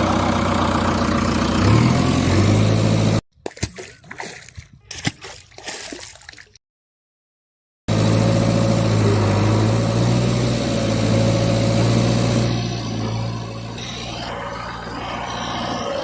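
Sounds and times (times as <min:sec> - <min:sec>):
engine running steadily: 0:00.0 - 0:04.3, 0:07.9 - 0:16.0.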